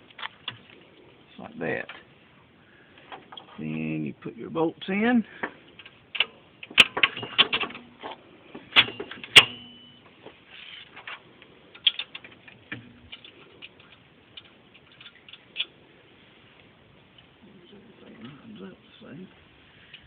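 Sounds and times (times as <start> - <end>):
metal bolts clinking: 5.4 - 15.8
metal strikes ringing: 8.8 - 10.1.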